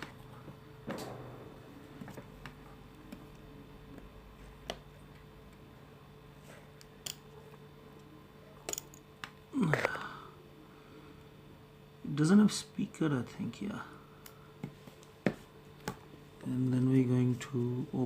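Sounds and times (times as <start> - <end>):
small tools tapping on phone parts: 8.7 - 9.4.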